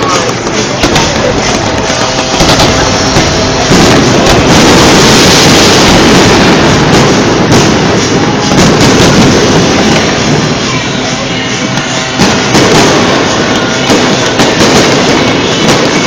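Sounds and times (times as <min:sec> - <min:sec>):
fireworks exploding: 0:00.0 - 0:16.0.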